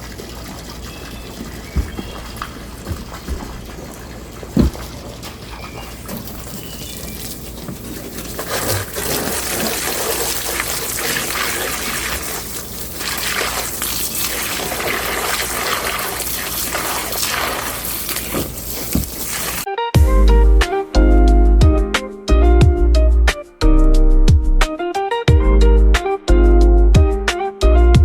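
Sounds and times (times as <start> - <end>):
water splashing over metal grates: 0.0 - 19.7.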